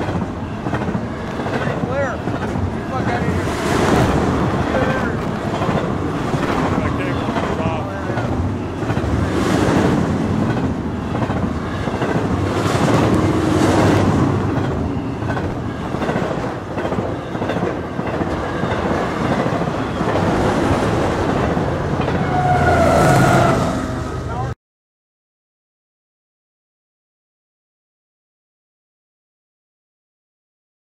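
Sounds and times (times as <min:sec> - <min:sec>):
train wheels clattering on rails: 0:00.0 - 0:23.7.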